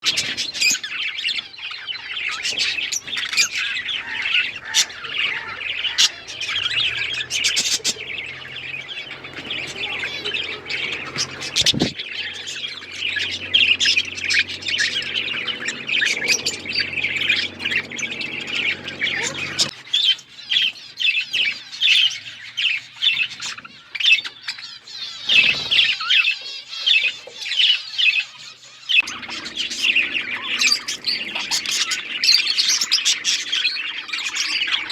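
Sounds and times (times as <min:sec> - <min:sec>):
budgerigars chattering and chirping: 0:00.0 - 0:34.9
faint low hum: 0:02.1 - 0:19.7.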